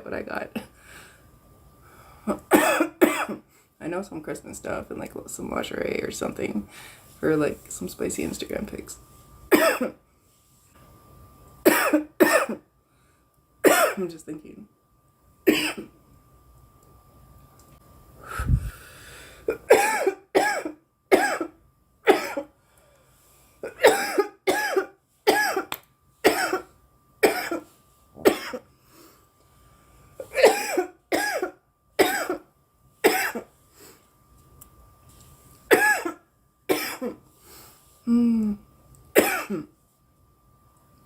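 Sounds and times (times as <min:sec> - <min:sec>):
faint steady hum: 0:00.0 - 0:41.0
woman coughing: 0:02.3 - 0:03.5, 0:09.5 - 0:10.0, 0:11.7 - 0:12.6, 0:13.6 - 0:14.1, 0:15.5 - 0:15.9, 0:19.5 - 0:22.5, 0:23.6 - 0:25.7, 0:26.3 - 0:28.7, 0:30.2 - 0:32.4, 0:33.0 - 0:33.5, 0:35.7 - 0:37.2, 0:39.2 - 0:39.7.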